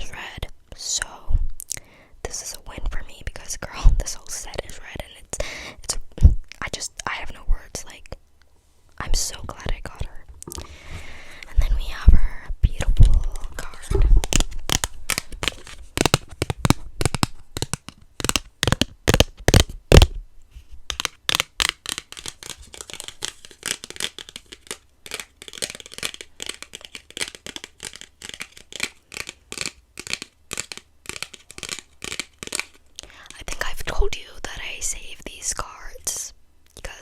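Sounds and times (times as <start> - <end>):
packaging crinkling and tearing: 13.3 - 20.1, 21.0 - 33.0.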